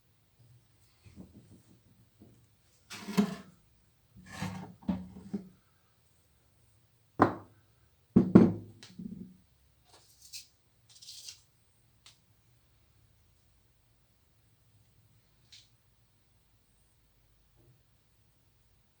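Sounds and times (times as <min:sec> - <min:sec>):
rubbing and scraping on workbench: 0:02.9 - 0:03.5, 0:04.2 - 0:05.5.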